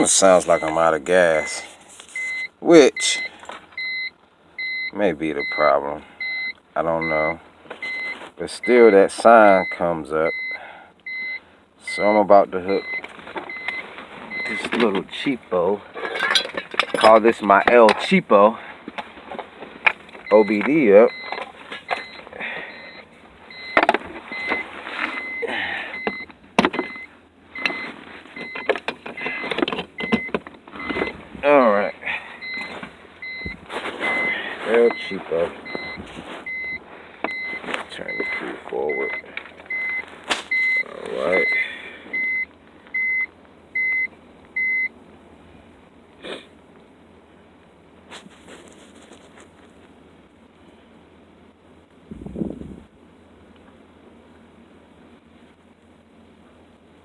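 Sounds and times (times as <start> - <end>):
car warning chime beeping: 0.0 - 15.0, 19.9 - 45.0.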